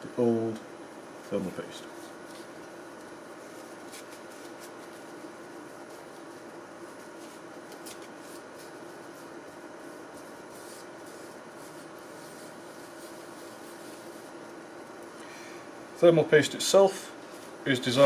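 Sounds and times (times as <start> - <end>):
steady low hum: 0.0 - 18.0
tissue paper rubbing and scratching: 1.9 - 14.5.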